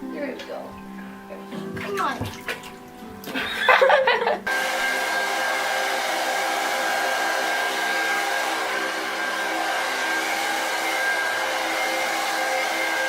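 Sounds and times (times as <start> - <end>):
hair dryer running: 3.3 - 13.0.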